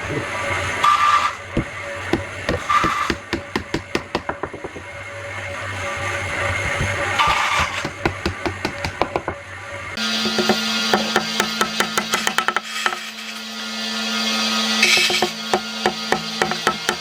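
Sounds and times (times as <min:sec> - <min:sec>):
rapid light knocks: 0:01.6 - 0:05.1, 0:06.4 - 0:09.4.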